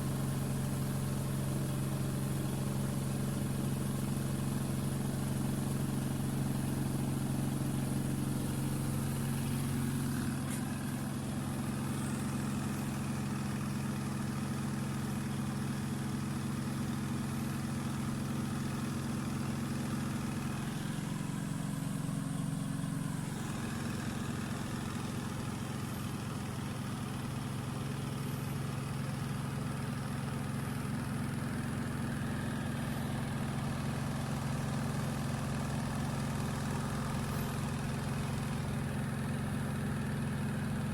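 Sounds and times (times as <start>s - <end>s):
washing machine motor humming: 5.2s - 12.9s.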